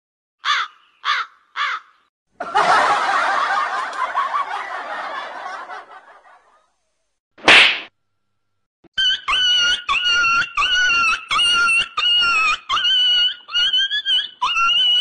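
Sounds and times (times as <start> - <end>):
short caw-like calls: 0.4 - 2.0
burst of laughter: 2.4 - 6.7.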